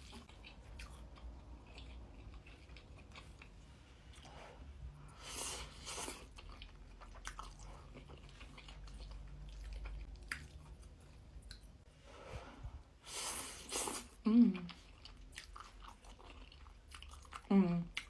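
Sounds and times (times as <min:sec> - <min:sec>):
person chewing food: 0:00.0 - 0:11.8, 0:13.1 - 0:18.0.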